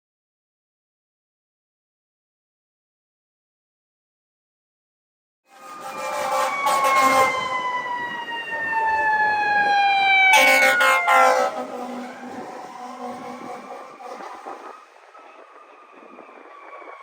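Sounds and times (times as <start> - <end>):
fire truck siren wail: 5.5 - 17.0.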